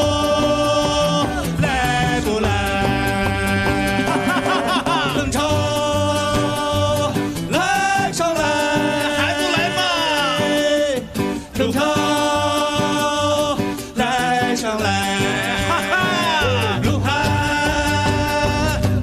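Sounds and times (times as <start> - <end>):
person singing long notes: 0.0 - 10.6, 14.1 - 19.0
band with steady bass beat: 16.5 - 19.0.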